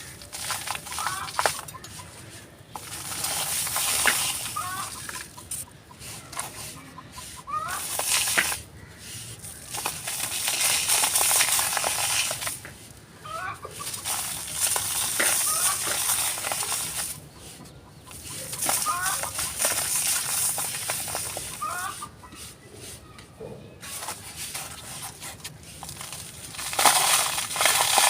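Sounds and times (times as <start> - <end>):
chicken clucking: 0.0 - 8.5, 13.2 - 24.2
cement chunks crunching: 0.0 - 28.0.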